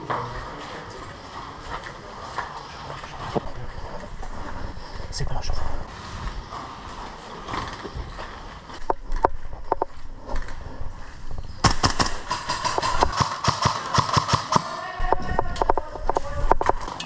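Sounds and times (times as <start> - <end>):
airsoft guns firing: 11.6 - 15.9.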